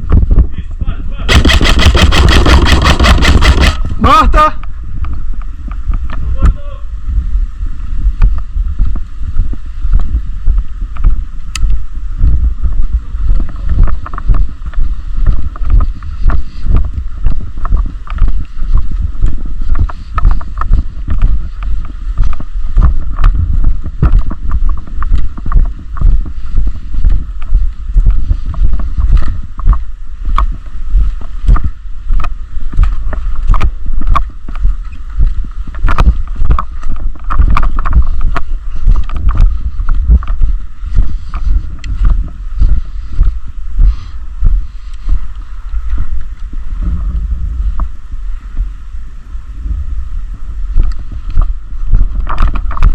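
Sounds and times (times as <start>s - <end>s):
wind on microphone: 0.0s - 52.9s
camera jolting and rubbing: 1.3s - 4.0s.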